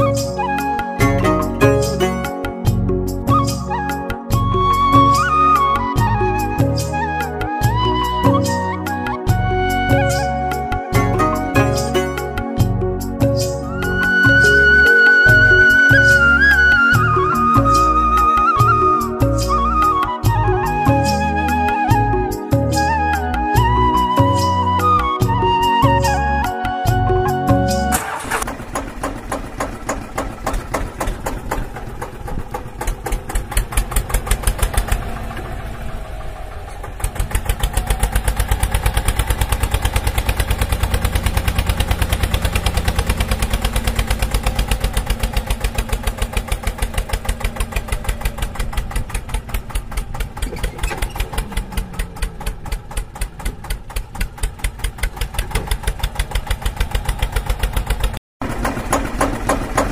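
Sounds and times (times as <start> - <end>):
small tractor engine chugging: 27.9 - 59.9.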